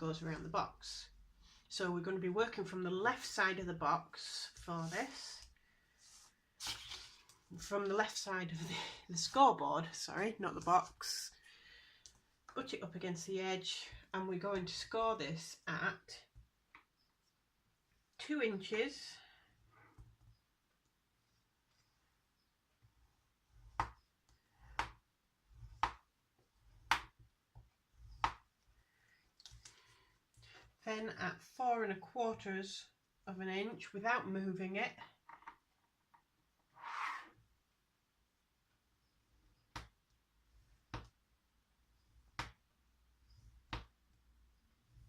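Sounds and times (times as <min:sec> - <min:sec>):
scoring tool scraping card: 0:04.5 - 0:07.7, 0:21.3 - 0:28.8, 0:36.7 - 0:37.4, 0:43.2 - 0:44.0
scoring tool pressing paper: 0:22.7 - 0:30.6.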